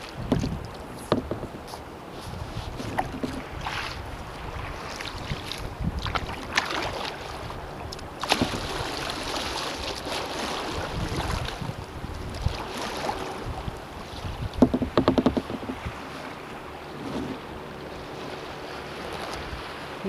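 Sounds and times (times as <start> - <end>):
paddle splashing: 0.0 - 20.0
water sloshing against hull: 0.0 - 20.0
wind buffeting microphone: 0.0 - 20.0.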